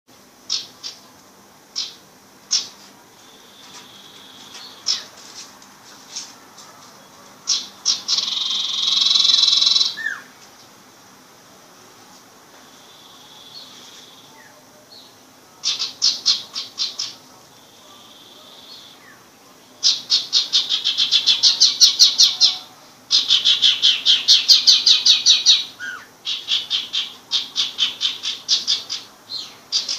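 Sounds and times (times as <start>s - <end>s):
harsh rattling bird call: 0.4s - 1.1s, 1.7s - 5.2s, 7.0s - 10.4s, 15.0s - 29.9s.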